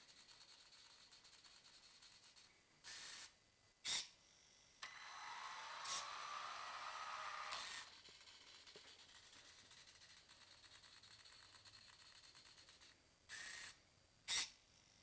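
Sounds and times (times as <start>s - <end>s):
rc car motor whirring: 4.8s - 12.0s.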